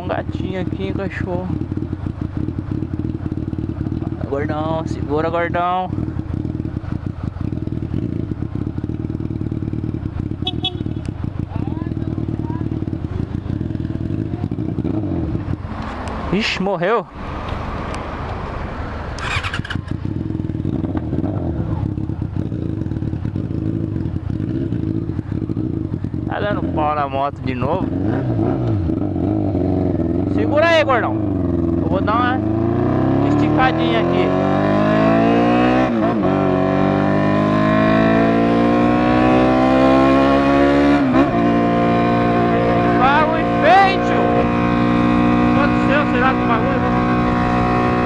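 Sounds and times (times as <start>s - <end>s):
motorcycle engine starting and idling: 0.0s - 5.3s, 17.2s - 27.4s
motorcycle engine accelerating: 0.0s - 48.0s.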